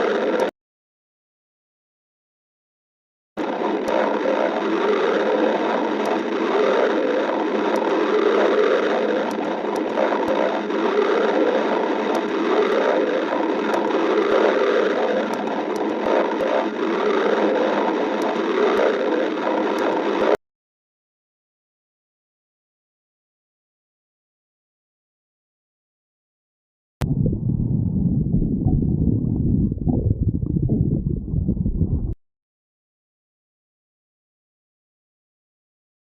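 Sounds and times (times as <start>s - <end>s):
stomach growling and gurgling: 0.0s - 0.5s, 3.4s - 20.4s, 27.0s - 32.2s
small clicks: 6.0s - 20.4s.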